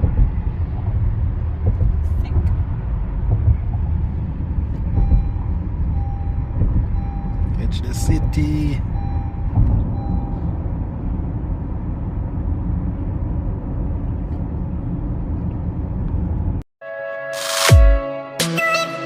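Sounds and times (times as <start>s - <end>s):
car driving road noise: 0.0s - 16.6s
electronic music: 16.8s - 19.0s.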